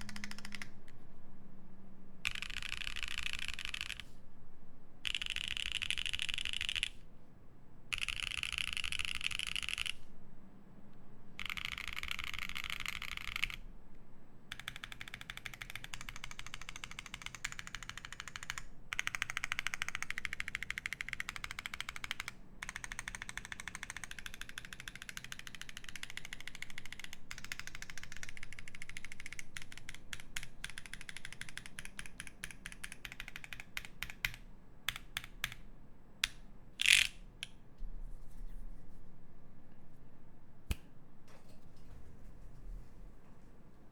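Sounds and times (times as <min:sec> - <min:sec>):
mechanical keyboard typing: 0:00.0 - 0:01.0, 0:02.2 - 0:04.1, 0:05.0 - 0:07.0, 0:07.9 - 0:10.0, 0:11.4 - 0:13.6, 0:14.5 - 0:37.1.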